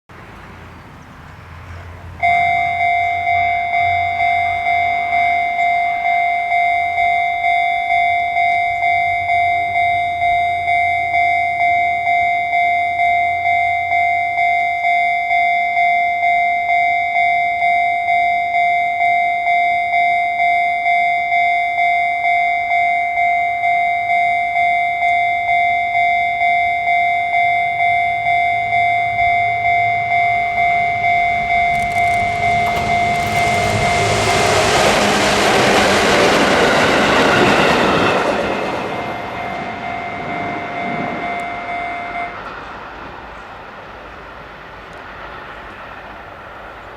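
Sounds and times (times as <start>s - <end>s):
level crossing bell ringing: 2.2s - 35.0s, 37.7s - 42.4s
low rumble: 28.6s - 41.7s.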